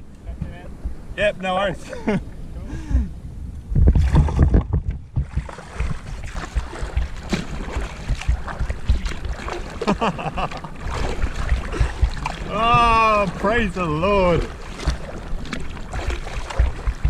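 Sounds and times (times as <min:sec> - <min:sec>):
wind on microphone: 0:00.0 - 0:17.0
water slapping against kayak hull: 0:03.7 - 0:17.0.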